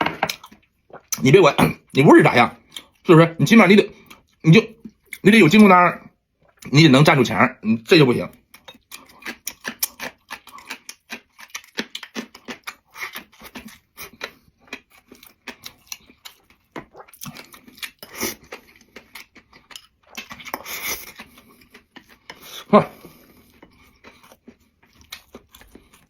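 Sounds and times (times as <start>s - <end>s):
person crunching and chewing: 8.4s - 26.0s.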